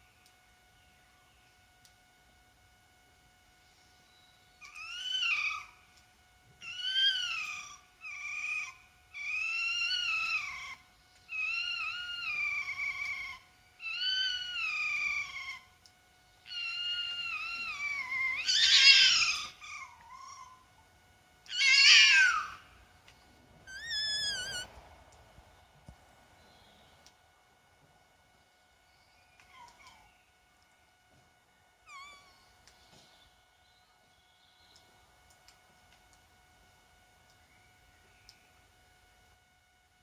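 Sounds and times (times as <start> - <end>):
faint steady hum: 0.0 - 40.0
fox calling: 4.6 - 5.8, 6.6 - 15.7, 16.5 - 20.6, 21.5 - 22.8, 23.7 - 24.7.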